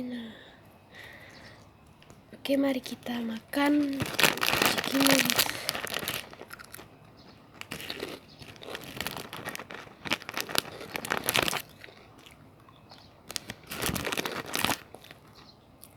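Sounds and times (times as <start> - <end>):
crunching and chewing snack: 1.0 - 15.9
plastic packet crinkling: 2.0 - 15.4.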